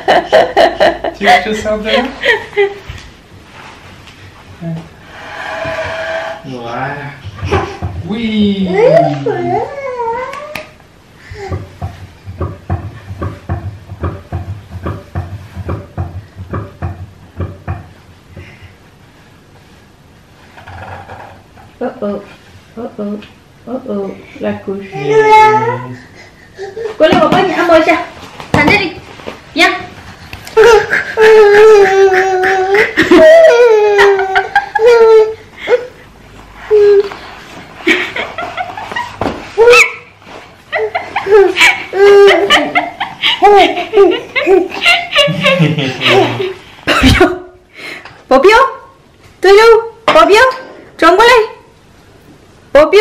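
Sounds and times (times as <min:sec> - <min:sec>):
rhythmic dull thumps: 0:11.4 - 0:18.0
person laughing: 0:30.6 - 0:36.0, 0:40.8 - 0:47.5.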